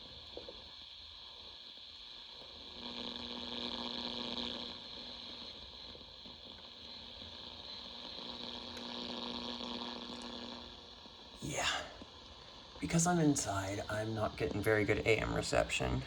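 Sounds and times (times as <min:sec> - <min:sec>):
radio static hissing: 0:02.3 - 0:16.0
weak radio station: 0:11.4 - 0:16.0.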